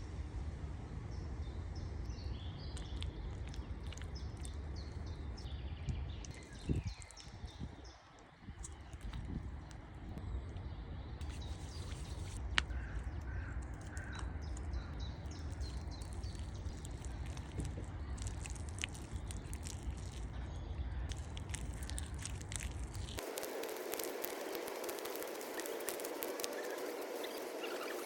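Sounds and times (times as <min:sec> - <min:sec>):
wind rumbling on microphone: 0:01.4 - 0:28.0
hiss: 0:23.2 - 0:28.0
short bird calls: 0:24.1 - 0:28.0.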